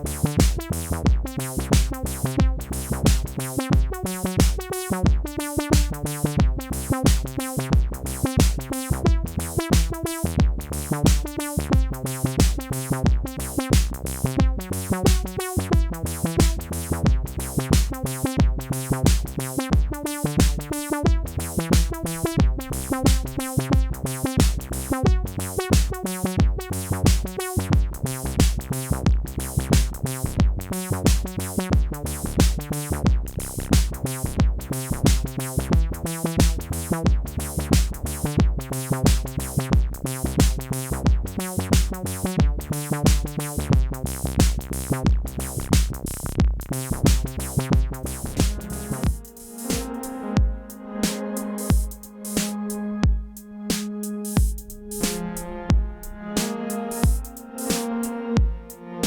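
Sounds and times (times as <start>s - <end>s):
drum machine loop: 0.0s - 58.7s
synthesizer notes: 48.5s - 57.0s.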